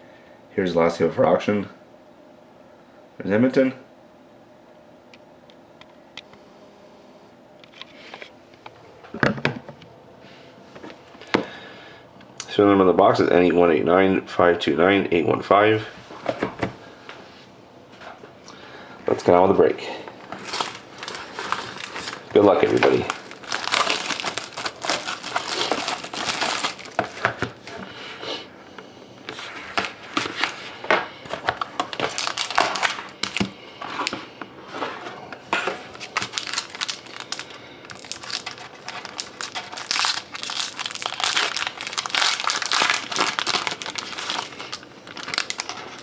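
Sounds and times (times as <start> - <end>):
wrapper crinkling and tearing: 20.3 - 27.5, 31.4 - 34.1, 35.7 - 46.0.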